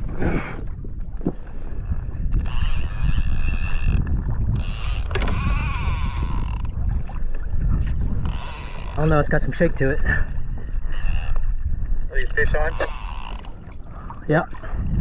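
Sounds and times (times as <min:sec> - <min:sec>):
rumble of wind and water: 0:00.0 - 0:15.0
fishing reel whirring: 0:02.4 - 0:06.7, 0:08.2 - 0:09.2, 0:10.8 - 0:11.4, 0:12.7 - 0:13.5.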